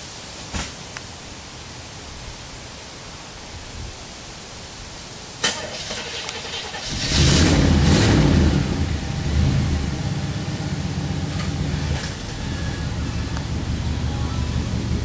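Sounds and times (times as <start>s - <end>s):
engine starting and idling: 5.4s - 15.0s.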